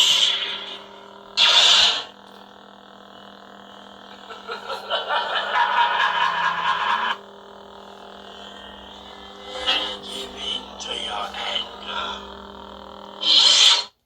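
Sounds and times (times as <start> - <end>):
loud noisy lightsaber effect: 0.0 - 2.1, 8.2 - 12.3, 13.2 - 13.9
lightsaber electric hum: 0.0 - 14.0.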